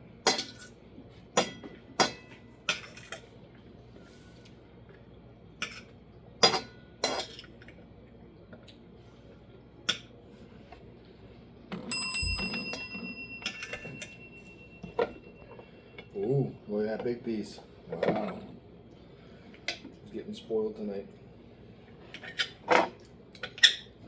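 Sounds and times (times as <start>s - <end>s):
desk service bell ringing: 11.9s - 16.9s.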